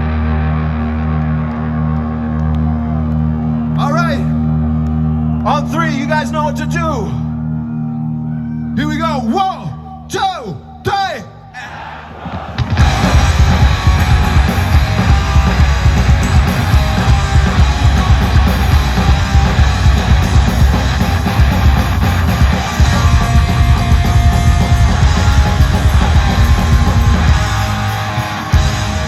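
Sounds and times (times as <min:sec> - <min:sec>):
electric guitars: 0:00.0 - 0:05.4, 0:12.5 - 0:29.0
bass guitar: 0:00.0 - 0:10.0, 0:12.6 - 0:29.0
drums: 0:11.6 - 0:29.0.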